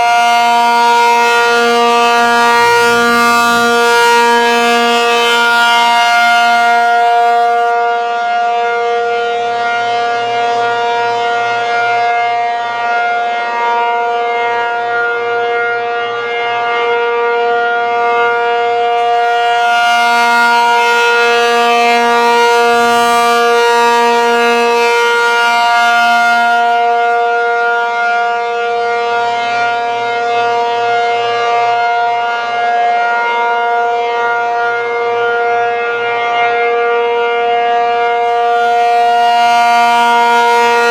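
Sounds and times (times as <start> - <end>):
warning siren steady tone: 0.0 - 40.9.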